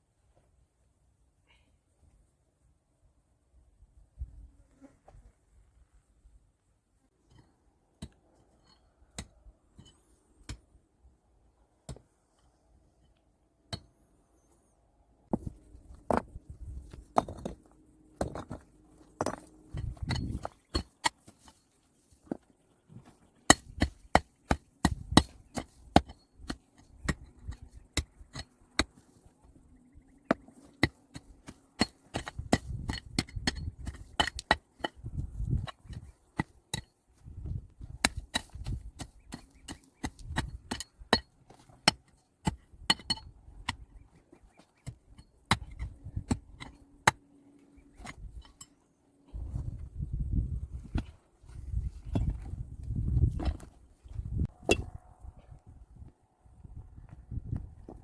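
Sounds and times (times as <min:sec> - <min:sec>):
dull low thuds: 0:49.4 - 0:55.5.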